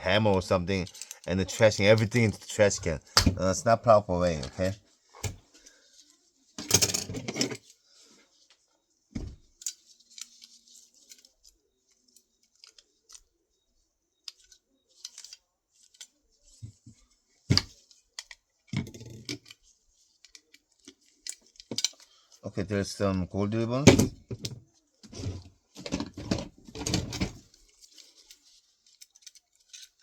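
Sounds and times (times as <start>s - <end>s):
small parts clicking and clinking: 0.8s - 3.3s, 6.0s - 7.7s, 9.6s - 13.3s, 14.2s - 16.2s, 17.5s - 22.4s, 27.0s - 30.0s.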